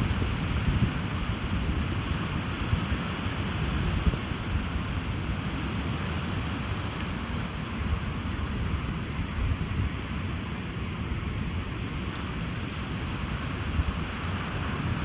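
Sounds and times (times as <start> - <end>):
wind buffeting microphone: 0.0 - 6.4, 13.5 - 15.0
ocean surf on beach: 0.0 - 15.0.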